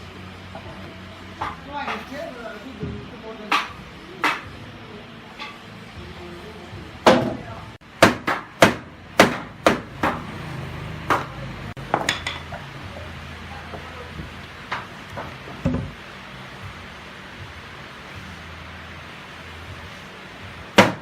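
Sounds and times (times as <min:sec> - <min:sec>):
hammer striking wood: 0:03.5 - 0:04.5, 0:08.0 - 0:10.3, 0:11.1 - 0:12.6, 0:20.8 - 0:21.0.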